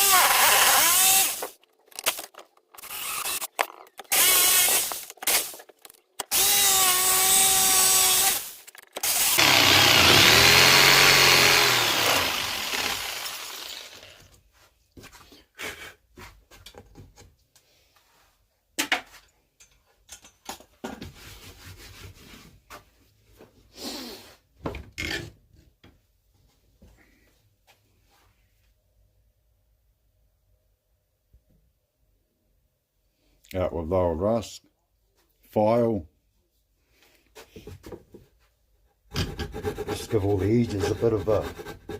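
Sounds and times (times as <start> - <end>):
electric power tool on wood: 0.0 - 1.6, 2.8 - 5.6, 6.2 - 14.3
knocks and clicks of handling: 3.4 - 4.2.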